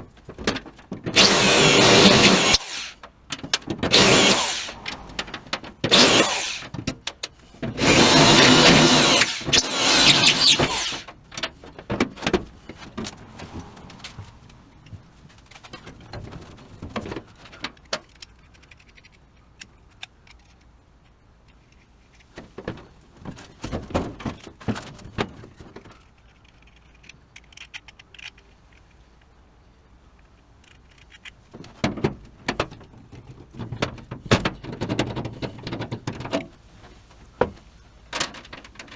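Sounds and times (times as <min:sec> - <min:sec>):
tools and parts clicking: 0:01.1 - 0:11.5, 0:26.2 - 0:28.8
power drill running: 0:01.2 - 0:03.0, 0:03.8 - 0:06.8, 0:07.7 - 0:11.1.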